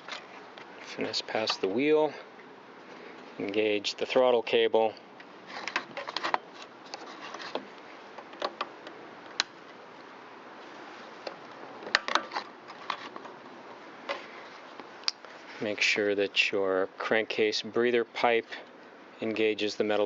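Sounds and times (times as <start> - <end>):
faint steady hiss: 0.0 - 20.0.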